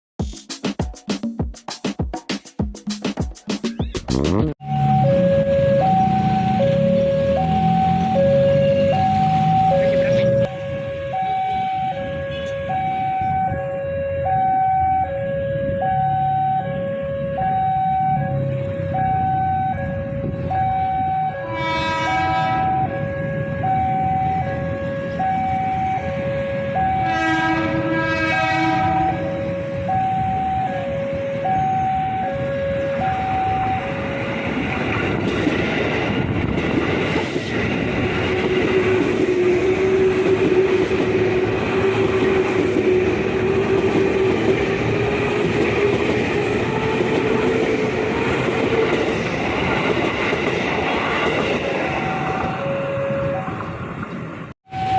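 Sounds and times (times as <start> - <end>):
two-tone warning alarm: 4.6 - 34.9, 37.6 - 53.8, 54.6 - 54.9
train horn blasts: 10.4 - 14.3, 19.7 - 34.3, 38.6 - 48.9
train wheels rumbling on rail: 32.3 - 54.9.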